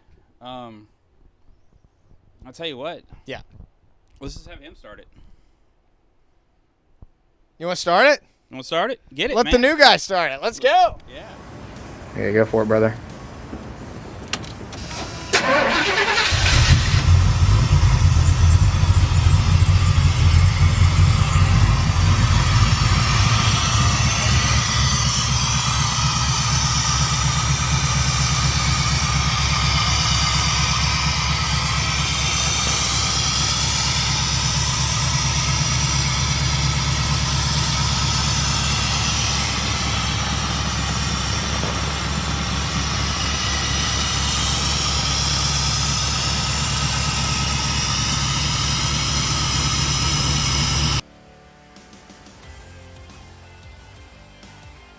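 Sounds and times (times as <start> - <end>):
engine idling: 11.0 - 51.0
engine cranking and starting: 11.2 - 51.0.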